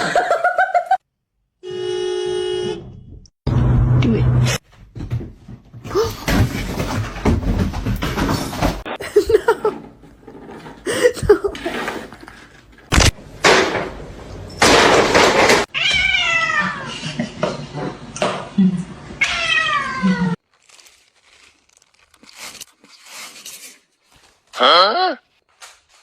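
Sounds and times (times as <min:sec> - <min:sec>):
cats meowing: 0:15.7 - 0:17.0, 0:19.2 - 0:20.4.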